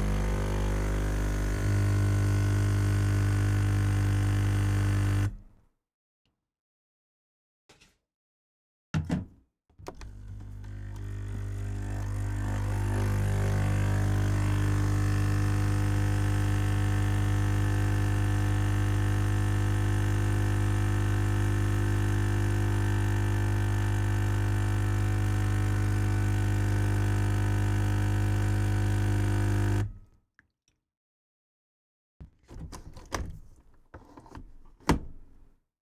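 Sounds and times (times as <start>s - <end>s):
coffee machine pump humming: 0.0s - 5.4s, 10.0s - 29.8s.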